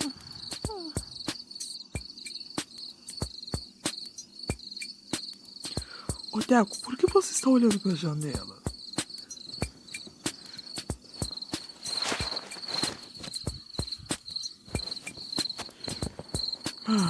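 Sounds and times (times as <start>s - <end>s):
crickets chirping: 0.0s - 17.0s
brief rustle: 11.2s - 16.8s.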